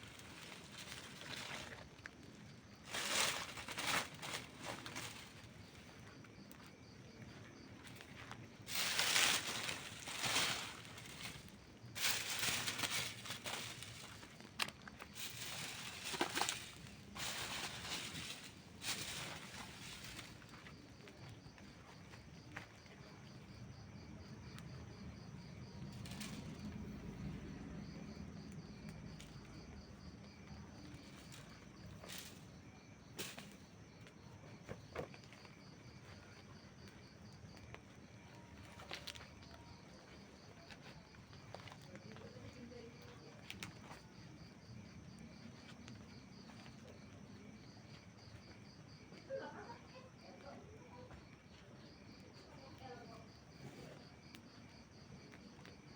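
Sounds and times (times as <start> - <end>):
campfire crackling: 0.0 - 21.5
crickets chirping: 0.0 - 55.9.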